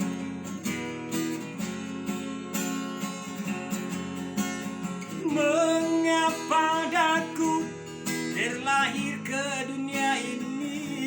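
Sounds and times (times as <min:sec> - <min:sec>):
acoustic guitar strumming: 0:00.0 - 0:11.0
man singing: 0:05.1 - 0:11.0.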